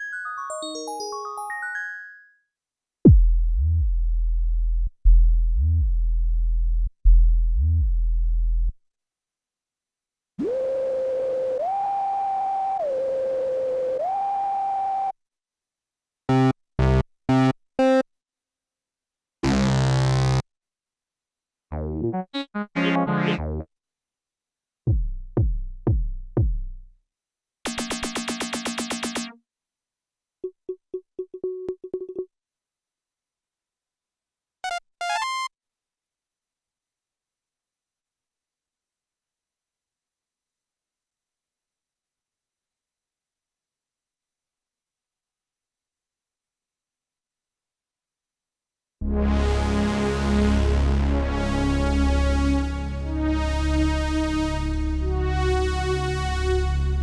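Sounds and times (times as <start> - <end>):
synthesizer deep bass notes: 3.1 - 8.7, 49.0 - 57.0.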